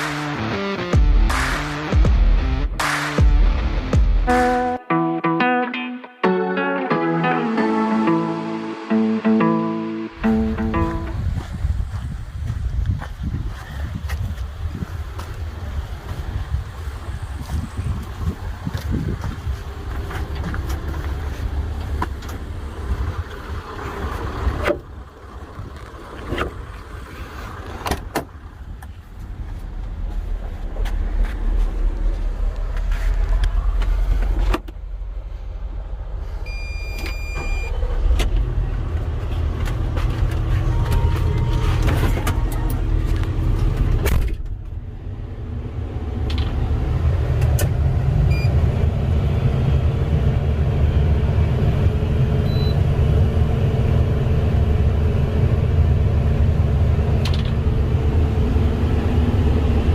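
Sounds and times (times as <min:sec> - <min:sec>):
excavator diesel engine running: 0:07.2 - 0:59.9.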